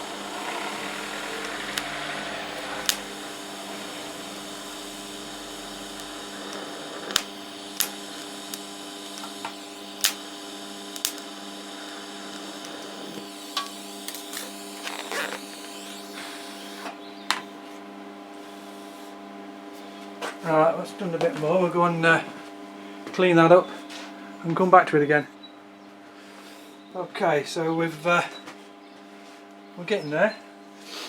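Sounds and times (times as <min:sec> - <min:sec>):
welder humming: 0:00.0 - 0:19.2
sharp clicks: 0:00.4 - 0:03.2, 0:05.4 - 0:08.6, 0:09.2 - 0:10.2.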